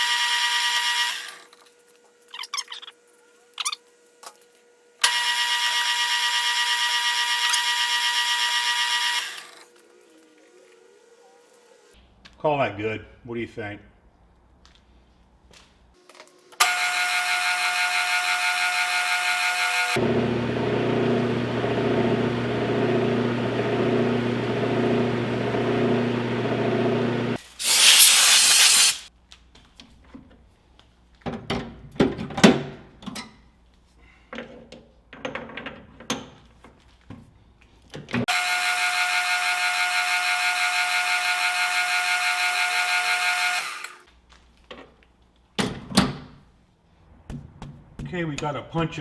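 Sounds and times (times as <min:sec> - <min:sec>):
high-pitched power tool running: 0:05.0 - 0:09.6, 0:16.6 - 0:21.8, 0:23.0 - 0:29.1, 0:38.3 - 0:44.0
loud rushing hiss: 0:27.4 - 0:29.1.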